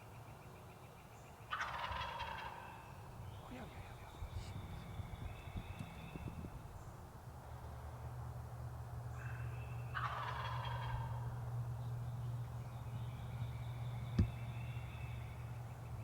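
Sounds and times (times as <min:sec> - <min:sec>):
turkey gobbling: 0:01.5 - 0:02.9, 0:09.3 - 0:11.3.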